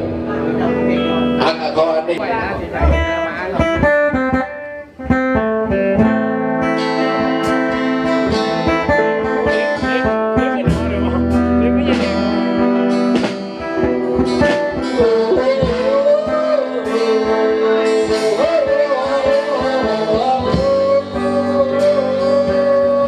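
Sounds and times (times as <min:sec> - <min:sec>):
plucked strings: 0:00.0 - 0:23.0
voice singing long notes: 0:13.8 - 0:23.0.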